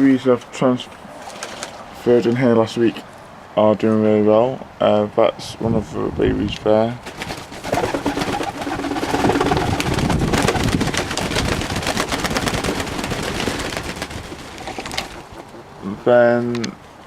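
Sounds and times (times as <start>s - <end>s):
doves clattering and rustling: 7.0s - 16.8s
doves cooing: 7.5s - 16.6s.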